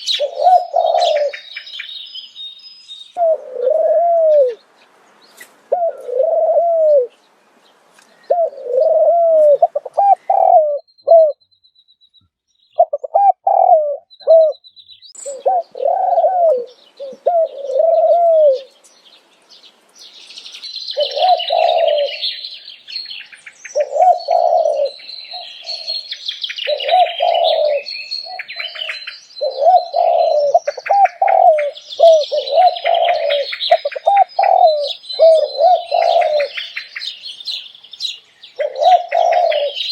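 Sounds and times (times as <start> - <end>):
dove cooing: 0.0 - 1.7, 3.2 - 4.6, 5.7 - 7.1, 8.3 - 11.4, 12.8 - 14.6, 15.2 - 18.8, 21.0 - 22.4, 23.8 - 36.9, 38.6 - 39.9
small birds chirping: 0.0 - 39.9.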